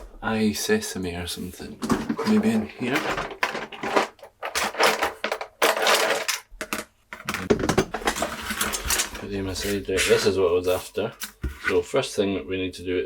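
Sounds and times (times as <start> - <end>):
metal tools clattering in drawer: 1.8 - 6.5, 7.4 - 9.3.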